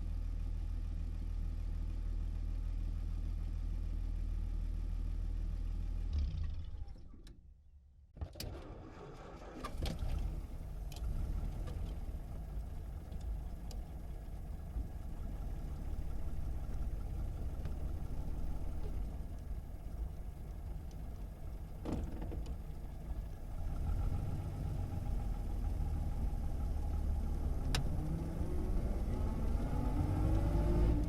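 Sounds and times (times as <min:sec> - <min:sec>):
engine cranking and starting: 0:08.2 - 0:11.9
car engine idling: 0:08.9 - 0:31.0.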